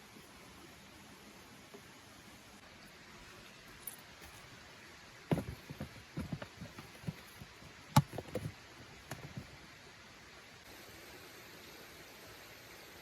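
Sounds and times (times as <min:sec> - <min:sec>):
light knocks and taps: 0:05.3 - 0:09.5.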